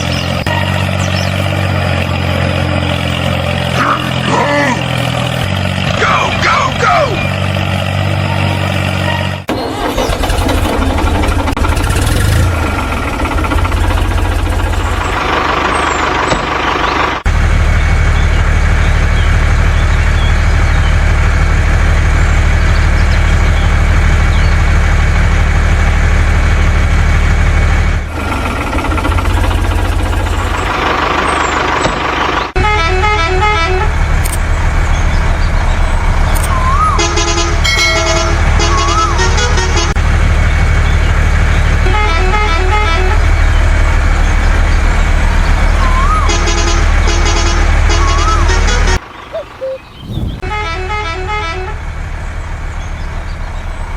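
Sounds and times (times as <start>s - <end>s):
heavy vehicle engine running: 0.0s - 53.9s
pitched horn toots: 32.6s - 34.0s, 36.7s - 40.0s, 41.7s - 43.4s, 45.8s - 49.0s, 50.1s - 51.8s.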